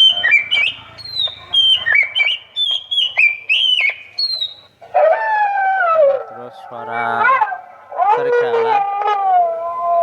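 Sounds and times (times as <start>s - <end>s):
electronic bird calls: 0.0s - 7.9s.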